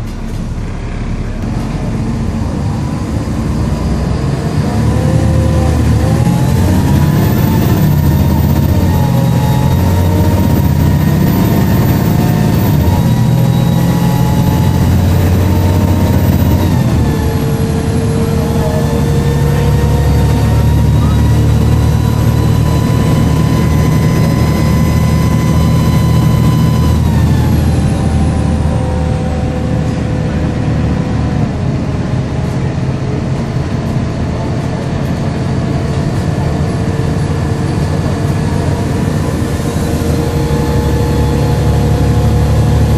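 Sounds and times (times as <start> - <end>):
bus diesel engine running: 0.0 - 42.9
whiny turbo whistle: 20.3 - 28.8.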